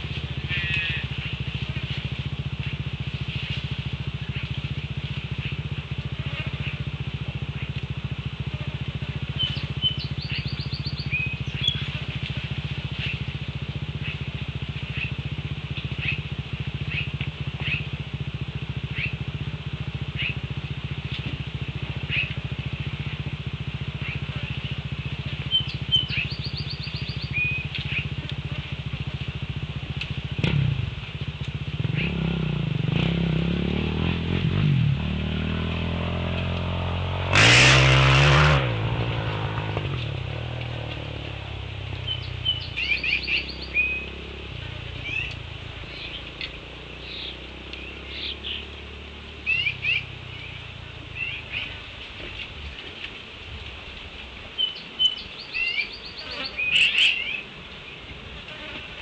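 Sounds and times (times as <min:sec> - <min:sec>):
small birds chirping: 0:00.0 - 0:29.3, 0:31.2 - 0:33.1, 0:41.8 - 0:53.2, 0:53.9 - 0:58.2
vehicle engine running: 0:00.0 - 0:59.0.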